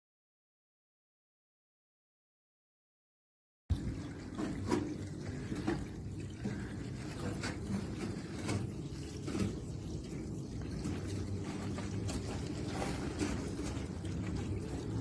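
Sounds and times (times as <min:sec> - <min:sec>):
water running down cascade: 0:03.7 - 0:15.0.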